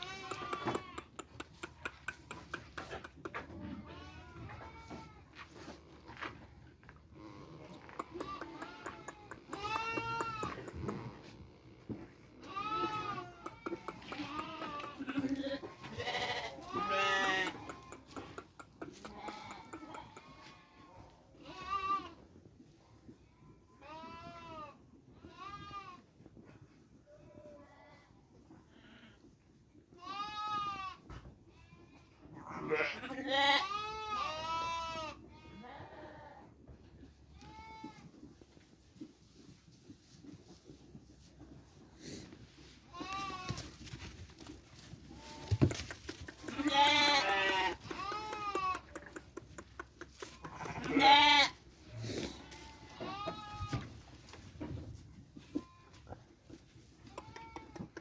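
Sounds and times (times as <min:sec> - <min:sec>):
sheep bleating: 0:00.0 - 0:01.3, 0:07.7 - 0:10.8, 0:12.4 - 0:18.2, 0:18.9 - 0:22.2, 0:32.4 - 0:36.4, 0:45.1 - 0:49.2, 0:50.2 - 0:53.9.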